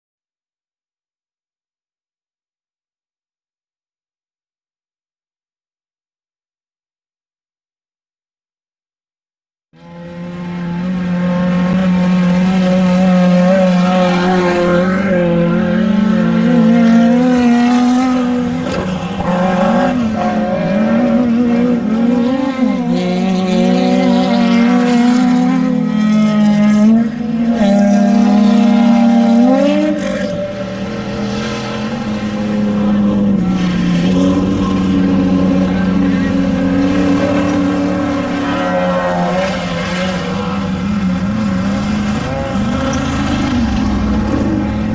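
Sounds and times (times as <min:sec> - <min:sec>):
race vehicle engines revving: 0:09.8 - 0:44.9.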